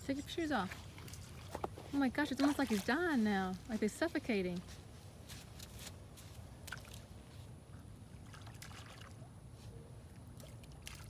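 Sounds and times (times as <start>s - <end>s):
water sloshing and trickling: 0.0s - 11.0s.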